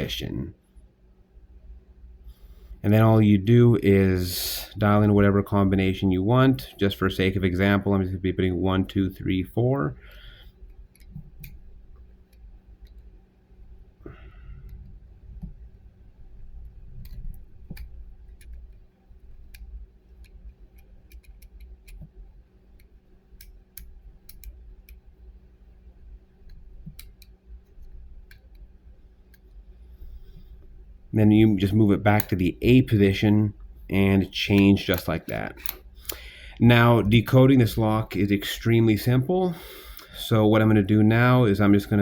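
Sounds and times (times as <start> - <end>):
low handling noise: 10.6 - 39.4.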